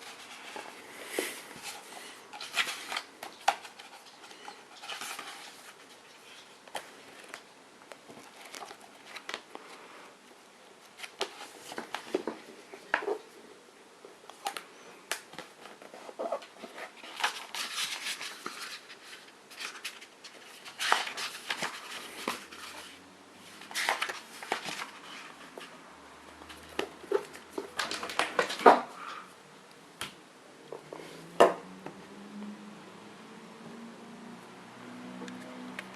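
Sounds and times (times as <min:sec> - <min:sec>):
paper rustles: 0:00.0 - 0:07.4, 0:08.1 - 0:09.8, 0:10.8 - 0:13.2, 0:15.3 - 0:25.8.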